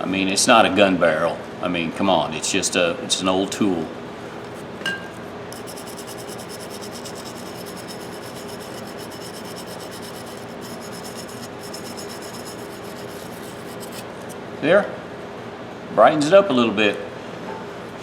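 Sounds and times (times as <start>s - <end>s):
wire brush scrubbing steel: 5.5s - 14.4s.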